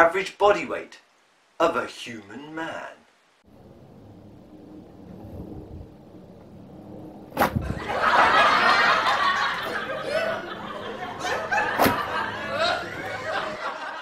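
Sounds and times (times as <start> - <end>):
loud thump: 7.3 - 7.8, 11.7 - 12.2
laughter: 7.6 - 14.0.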